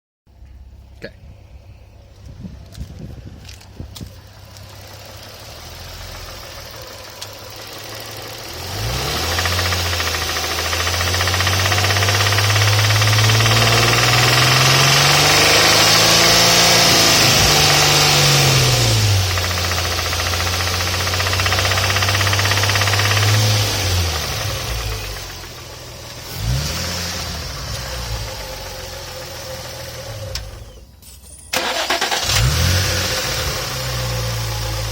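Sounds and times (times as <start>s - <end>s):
car engine starting and revving: 2.0s - 34.9s
engine knocking: 6.4s - 15.9s, 19.2s - 26.6s.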